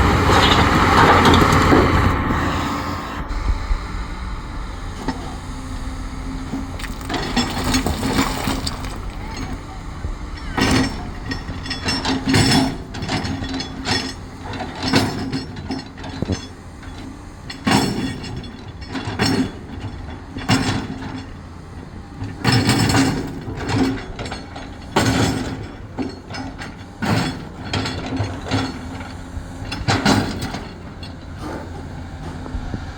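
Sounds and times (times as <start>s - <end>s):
heavy machine engine: 0.0s - 32.9s
rocks clanking and clattering: 4.8s - 17.0s.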